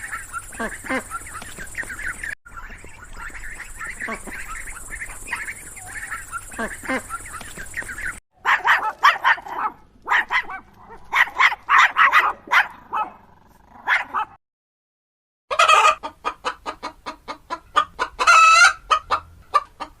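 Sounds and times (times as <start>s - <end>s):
chicken clucking: 0.0s - 8.2s, 15.5s - 20.0s
chicken squawk: 0.0s - 13.1s, 15.5s - 20.0s.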